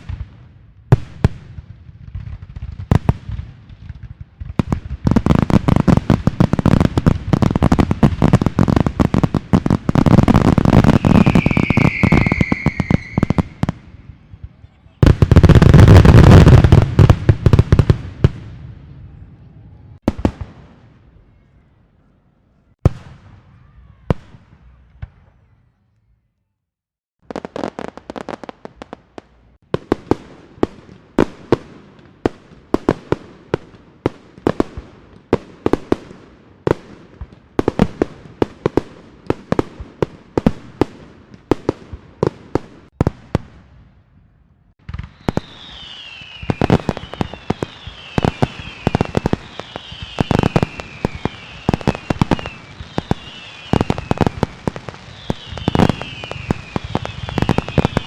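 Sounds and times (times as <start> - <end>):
firework bangs: 0.0 - 19.2, 20.0 - 21.0, 44.8 - 58.0
rapid firecracker pops: 44.8 - 58.0.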